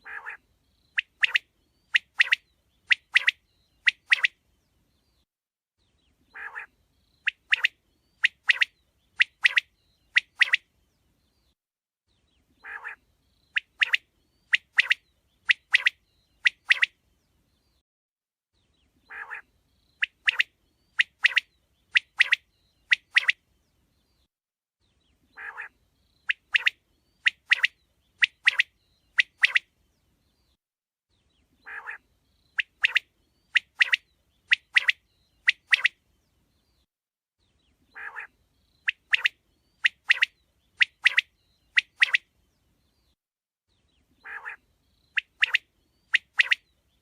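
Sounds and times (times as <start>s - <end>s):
quail calling: 0.0s - 0.4s, 6.3s - 6.7s, 12.6s - 13.0s, 19.1s - 19.4s, 25.4s - 25.7s, 31.6s - 32.0s, 37.9s - 38.3s, 44.2s - 44.6s.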